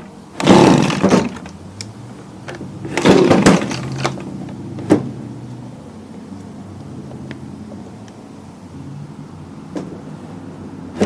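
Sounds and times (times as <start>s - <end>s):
recoil starter cord pulls: 0.4s - 4.3s.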